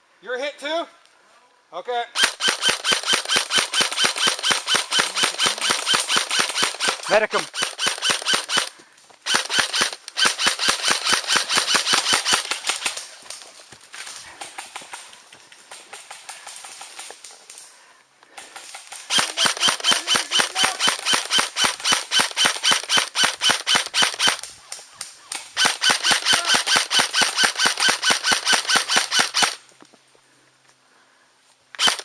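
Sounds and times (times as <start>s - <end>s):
distant rapid gunfire: 2.2s - 8.7s, 9.3s - 13.0s, 18.5s - 24.5s, 25.5s - 29.6s
airsoft rifle firing bursts: 2.2s - 13.1s, 18.4s - 24.5s, 25.5s - 29.6s, 31.8s - 32.0s.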